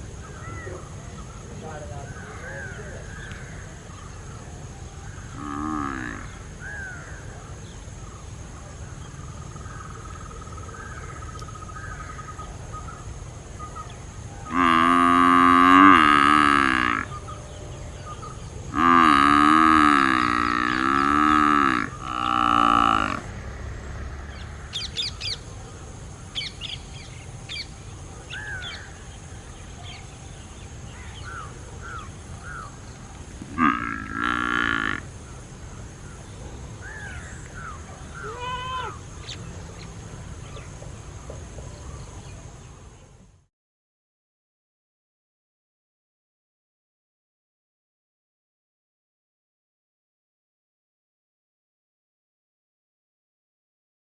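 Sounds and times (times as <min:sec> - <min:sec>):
water buffalo mooing: 0:05.4 - 0:06.3, 0:14.5 - 0:17.2, 0:18.7 - 0:23.4, 0:33.5 - 0:35.0.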